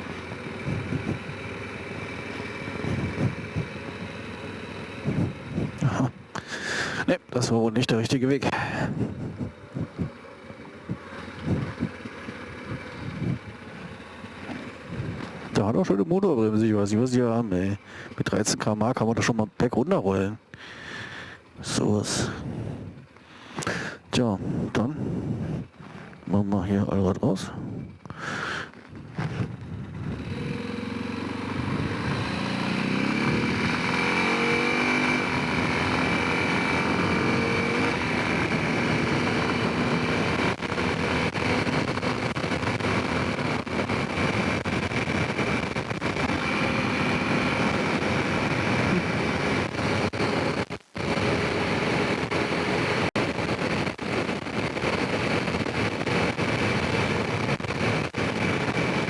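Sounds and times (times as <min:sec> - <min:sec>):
atv engine pulling away: 0:00.0 - 0:07.0, 0:08.8 - 0:16.0, 0:29.0 - 0:59.0.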